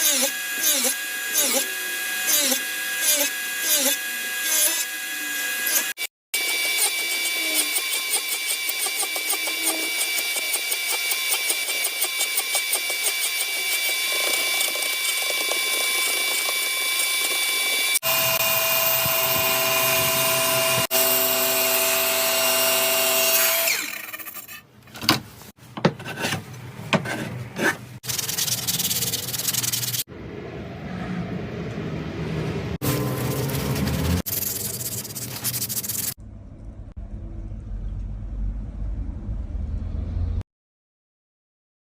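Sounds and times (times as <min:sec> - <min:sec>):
spinning cutter whine: 0:05.3 - 0:24.5.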